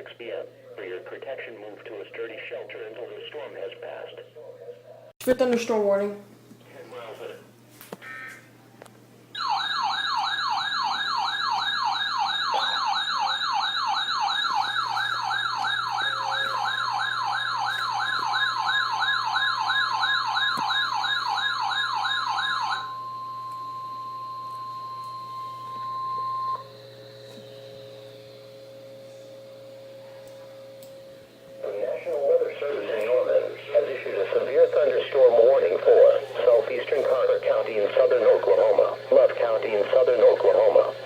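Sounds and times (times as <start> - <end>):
steady alarm tone: 9.3 - 41.0
rapid warbling siren: 9.4 - 41.0.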